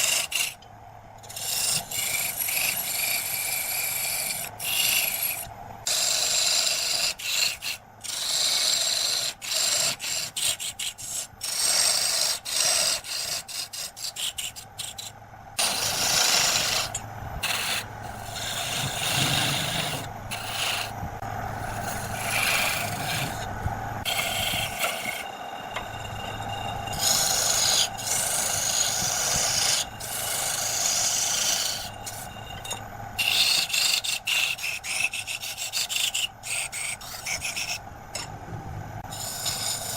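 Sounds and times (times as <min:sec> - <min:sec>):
tool scraping wood on lathe: 0:00.0 - 0:00.6, 0:01.3 - 0:37.8, 0:39.0 - 0:39.9
lathe motor hum: 0:01.3 - 0:38.1.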